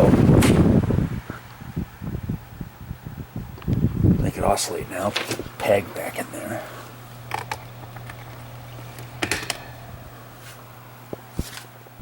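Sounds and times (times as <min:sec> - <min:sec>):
fan motor humming: 0:00.0 - 0:12.0
sharp clicks and knocks: 0:07.2 - 0:09.7.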